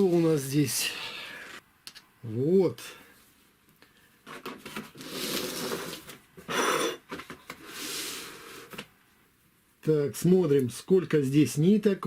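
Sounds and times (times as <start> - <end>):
rustling and scraping thread: 4.2 - 6.5.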